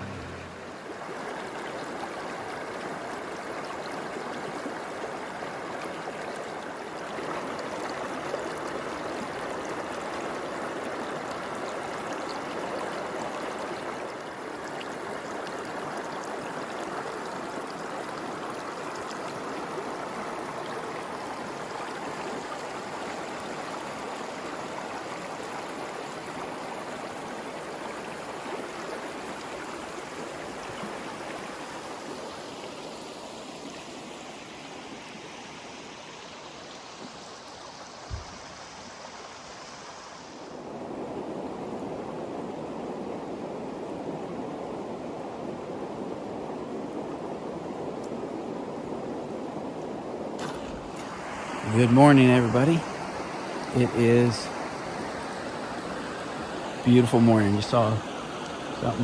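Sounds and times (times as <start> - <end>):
creek running over rocks: 0.0 - 59.0.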